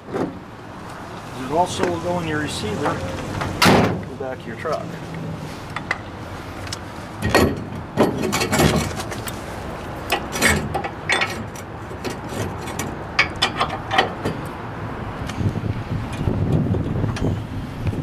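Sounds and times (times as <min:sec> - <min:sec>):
metal clunks and scraping: 0:00.0 - 0:00.5, 0:01.7 - 0:14.6.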